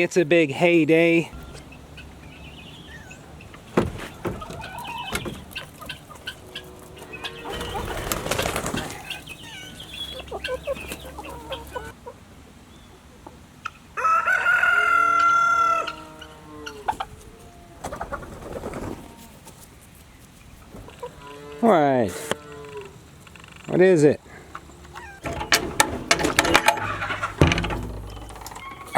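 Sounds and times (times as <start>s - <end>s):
chickens clucking: 0.6s - 28.9s
wings flapping: 3.1s - 11.9s, 17.8s - 20.0s
rooster crowing: 14.0s - 17.8s.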